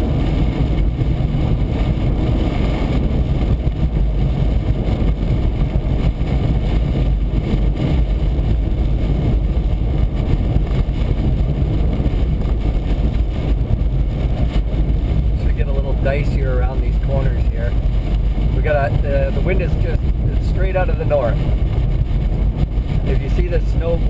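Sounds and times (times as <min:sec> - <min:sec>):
car driving low rumble: 0:00.0 - 0:24.0.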